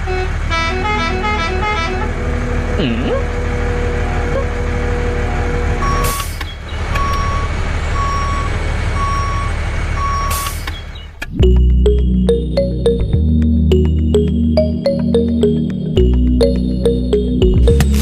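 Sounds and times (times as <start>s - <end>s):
truck engine running: 0.0s - 18.0s
reversing alarm beeping: 5.8s - 6.4s, 7.0s - 10.6s
music: 11.4s - 18.0s.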